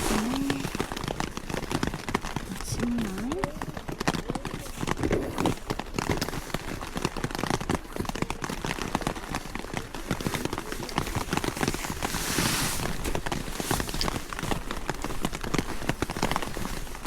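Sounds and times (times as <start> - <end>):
rustling swish: 0.0 - 0.9, 11.6 - 14.2
rain pattering on tent: 0.0 - 17.0.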